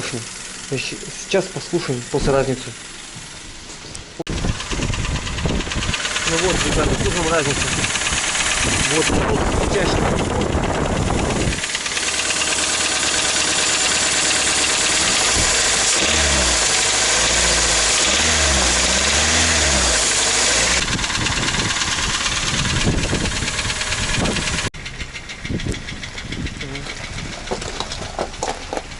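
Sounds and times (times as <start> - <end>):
car engine knocking: 0.0 - 3.4, 4.3 - 28.9.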